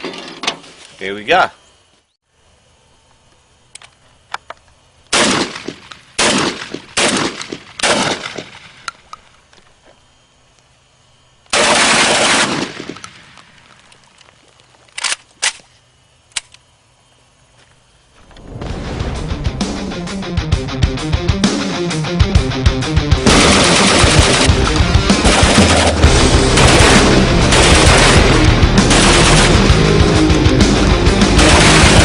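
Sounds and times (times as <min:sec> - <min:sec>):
rapid shotgun fire: 0:05.1 - 0:08.9, 0:11.5 - 0:13.4, 0:23.2 - 0:32.0
shotgun shots: 0:05.1 - 0:08.9, 0:11.5 - 0:13.6, 0:23.2 - 0:29.9, 0:31.3 - 0:32.0
small sharp clicks: 0:16.3 - 0:16.7.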